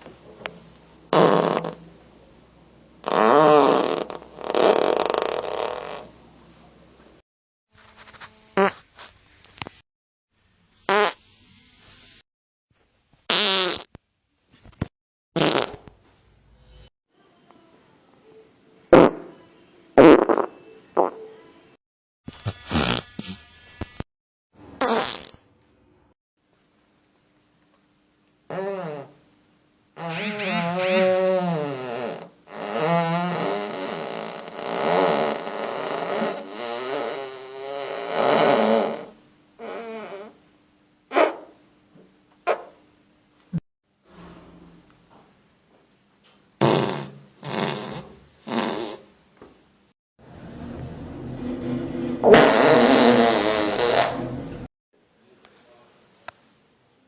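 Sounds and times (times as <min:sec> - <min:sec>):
farts: 0:01.1 - 0:01.8, 0:03.0 - 0:06.2, 0:08.5 - 0:08.9, 0:10.9 - 0:11.2, 0:13.3 - 0:14.0, 0:15.4 - 0:15.9, 0:18.9 - 0:19.3, 0:20.0 - 0:21.2, 0:22.6 - 0:23.4, 0:24.8 - 0:25.4, 0:28.5 - 0:29.2, 0:30.0 - 0:40.4, 0:41.1 - 0:41.6, 0:46.6 - 0:49.1, 0:52.2 - 0:54.6.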